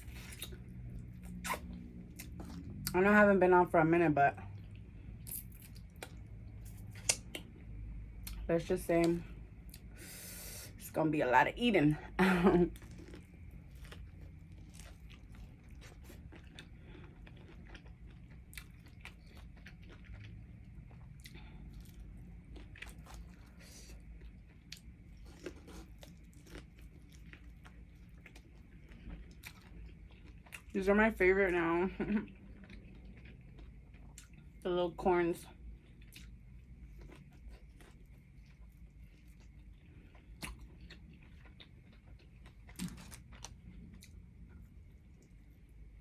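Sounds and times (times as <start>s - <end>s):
person chewing crunchy food: 0.0s - 2.9s, 4.5s - 8.4s, 12.5s - 30.7s, 32.3s - 34.6s, 35.6s - 46.0s
crunchy bites: 40.1s - 44.2s.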